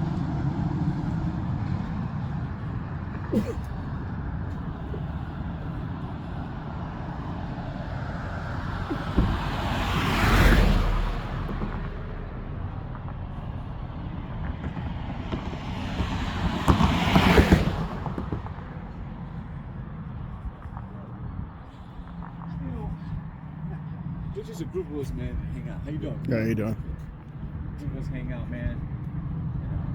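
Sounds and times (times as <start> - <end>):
car engines idling: 0.0 - 29.9
vehicles driving past: 0.0 - 29.9.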